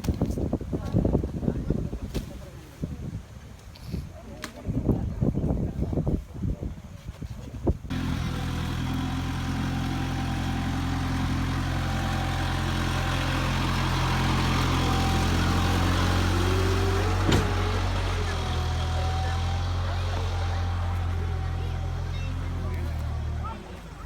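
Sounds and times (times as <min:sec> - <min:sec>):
large engine idling: 0:07.9 - 0:24.0.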